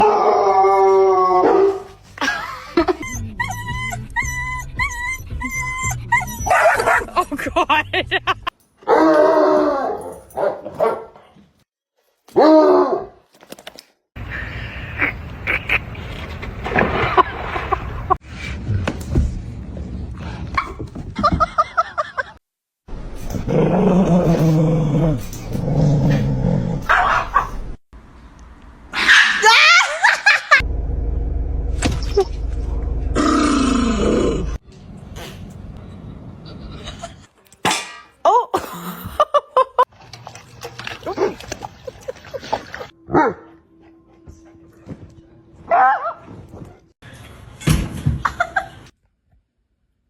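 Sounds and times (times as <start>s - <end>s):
dog whining: 3.0s - 6.8s.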